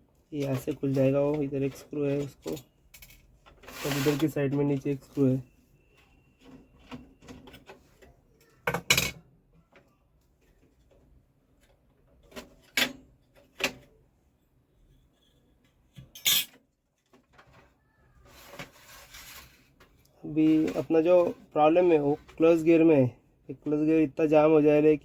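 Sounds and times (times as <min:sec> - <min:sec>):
rustle of handling: 0:17.0 - 0:22.7.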